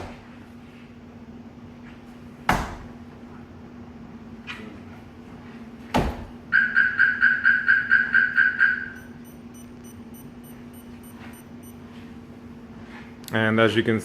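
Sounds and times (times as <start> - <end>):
sharp knock on car body: 2.5 - 2.9
car alarm rapid beeps: 6.5 - 11.8
faint high-pitched beeping: 8.2 - 11.8.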